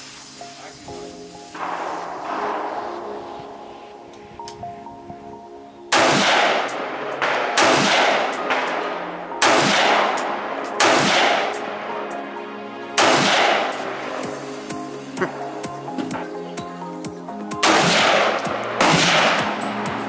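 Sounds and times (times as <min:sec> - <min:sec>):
background music: 0:00.0 - 0:20.0
rifle shots with echo: 0:01.6 - 0:04.2, 0:05.9 - 0:11.8, 0:13.0 - 0:14.0, 0:17.6 - 0:19.9.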